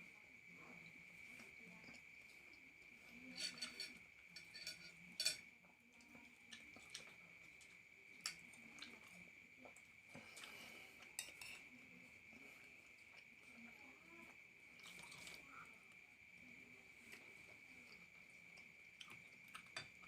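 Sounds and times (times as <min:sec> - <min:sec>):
soft chewing: 0:00.0 - 0:20.0
cutlery clicking on a plate: 0:03.3 - 0:05.5, 0:11.2 - 0:11.7.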